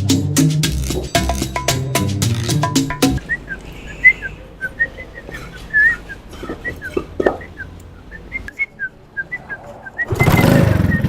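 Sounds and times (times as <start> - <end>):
high whistle-like chirps: 3.2 - 11.0.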